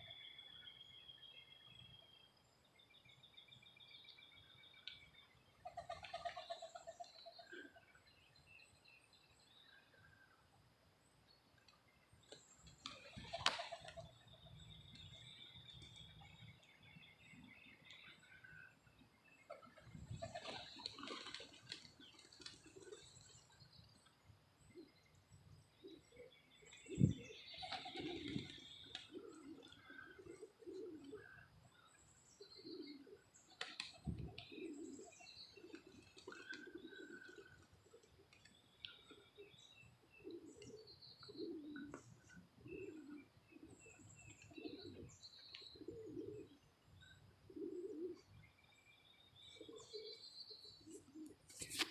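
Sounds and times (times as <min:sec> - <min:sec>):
birds chirping: 0:11.4 - 0:51.9.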